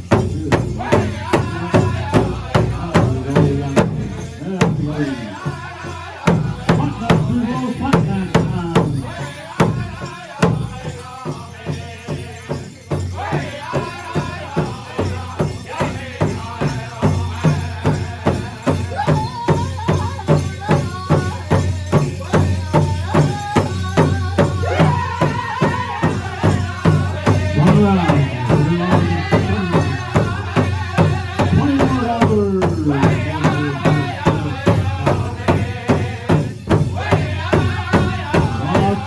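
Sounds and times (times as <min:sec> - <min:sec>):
big drum beating: 0:00.0 - 0:11.0, 0:22.4 - 0:39.0
singers chanting in unison: 0:00.0 - 0:39.0.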